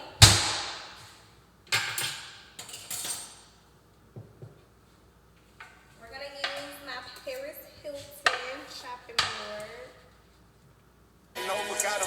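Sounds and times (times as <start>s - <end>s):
kitchenware clattering on counter: 1.7s - 3.6s, 5.6s - 10.0s.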